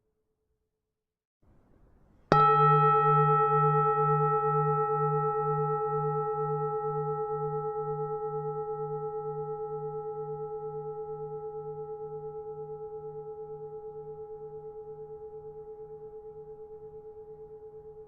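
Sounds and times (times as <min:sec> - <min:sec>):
temple bell ringing: 0:02.3 - 0:09.0.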